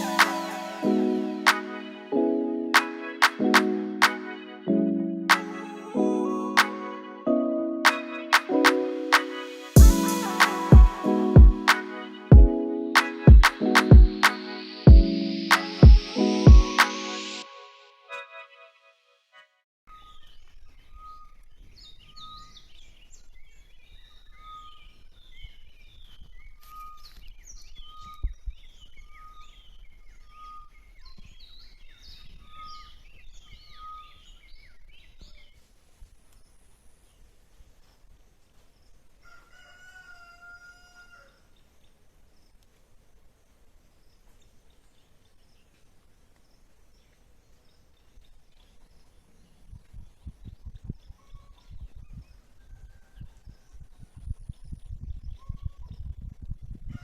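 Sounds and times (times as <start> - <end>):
songbirds chirping: 19.9 - 56.1
rooster crowing: 39.2 - 41.4.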